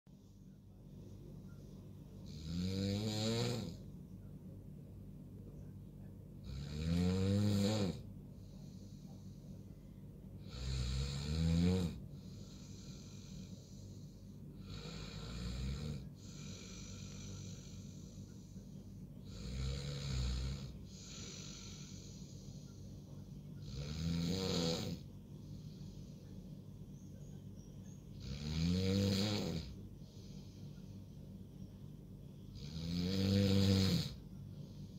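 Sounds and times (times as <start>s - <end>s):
person snoring: 2.2s - 3.8s, 6.4s - 9.4s, 10.4s - 26.1s, 28.1s - 30.8s, 32.5s - 34.9s
soft breaths: 8.0s - 10.8s, 12.0s - 23.8s, 25.0s - 28.2s, 29.5s - 32.6s, 34.1s - 34.9s.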